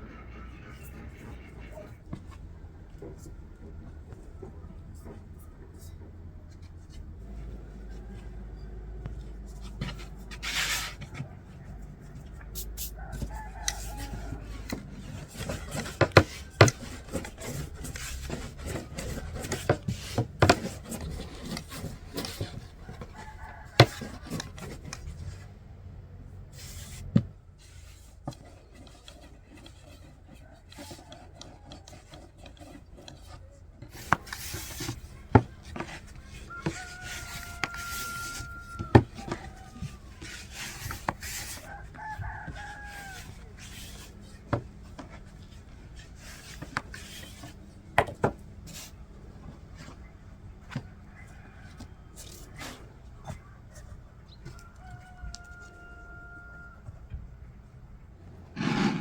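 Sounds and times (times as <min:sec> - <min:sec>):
scraping on a hard surface: 0:09.4 - 0:25.5, 0:26.6 - 0:47.6, 0:58.5 - 0:59.0.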